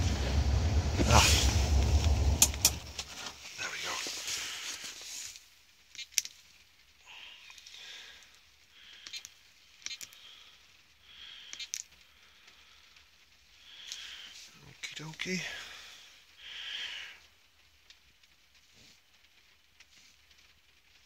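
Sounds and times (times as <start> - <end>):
close-up breathing: 0.0 - 5.4, 7.0 - 14.6, 15.2 - 17.4.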